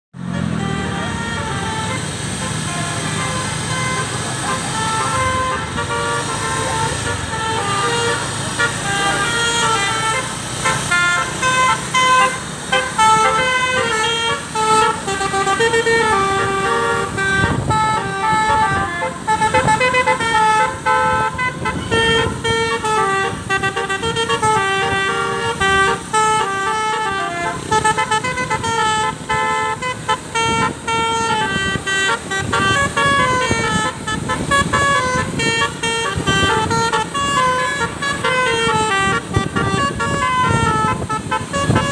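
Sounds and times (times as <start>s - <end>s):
multi-tone bus horn melody: 0.2s - 41.9s.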